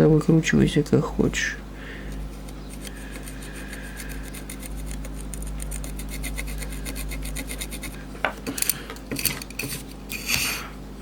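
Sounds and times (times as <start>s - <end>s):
steady low hum: 0.0s - 11.0s
tool scratching circuit board: 2.7s - 8.0s.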